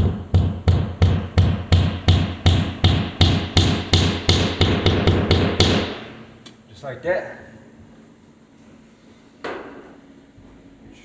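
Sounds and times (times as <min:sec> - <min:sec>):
hammer striking rhythmically: 0:00.0 - 0:06.2.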